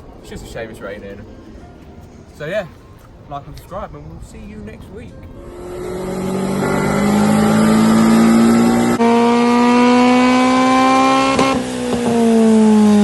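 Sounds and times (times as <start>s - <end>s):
car engine revving: 5.3s - 13.0s.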